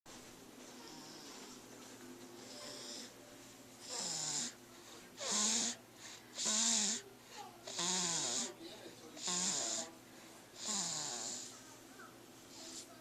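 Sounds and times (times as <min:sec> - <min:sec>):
pet snoring: 0:00.8 - 0:01.6, 0:02.4 - 0:03.2, 0:03.8 - 0:04.6, 0:05.2 - 0:08.6, 0:09.2 - 0:10.0, 0:10.6 - 0:11.6.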